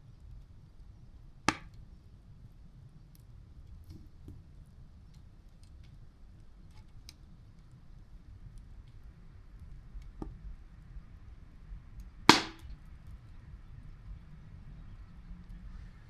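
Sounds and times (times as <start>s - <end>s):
wood fire crackling: 12.3s - 12.7s
loud pop from fire: 12.3s - 12.8s.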